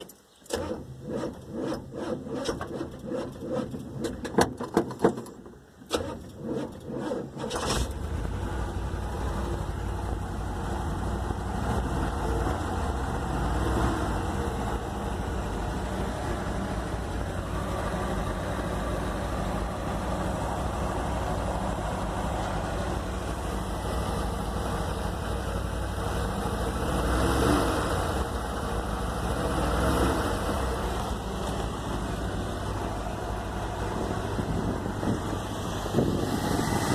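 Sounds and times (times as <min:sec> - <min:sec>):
engine running and revving: 0:00.5 - 0:04.5, 0:05.9 - 0:36.9
starter cranking engine: 0:00.5 - 0:05.2.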